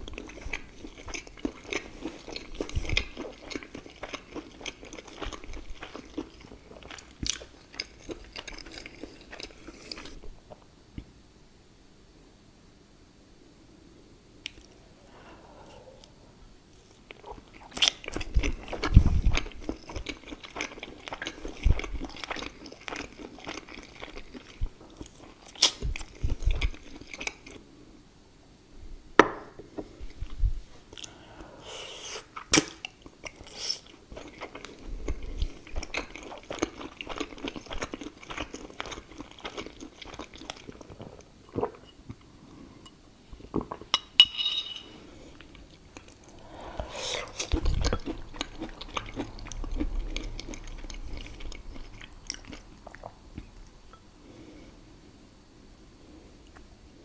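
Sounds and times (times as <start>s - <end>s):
person chewing food: 0.0s - 10.7s, 16.8s - 27.6s, 30.0s - 44.2s, 45.0s - 54.1s.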